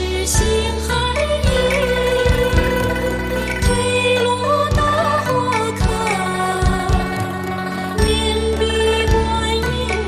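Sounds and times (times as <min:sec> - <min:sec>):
sustained melody over drone: 0:01.4 - 0:05.2.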